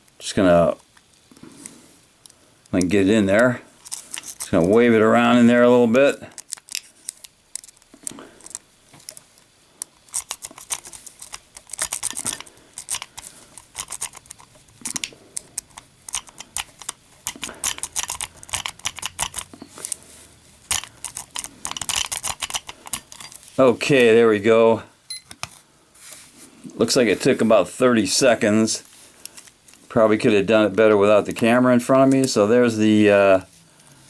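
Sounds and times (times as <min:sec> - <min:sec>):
metallic scraping and clicking of lock: 0:10.1 - 0:20.0, 0:20.6 - 0:23.5.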